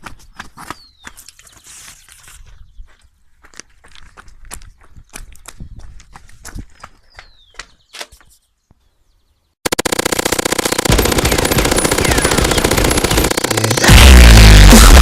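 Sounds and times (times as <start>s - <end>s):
electronic music with stutter beat: 11.0s - 15.0s.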